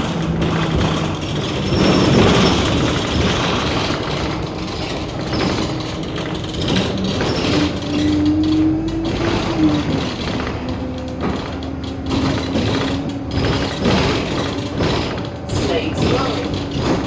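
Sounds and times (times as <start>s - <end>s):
bus body rattling and squeaking: 0.0s - 17.0s
bus drivetrain running: 0.0s - 17.0s.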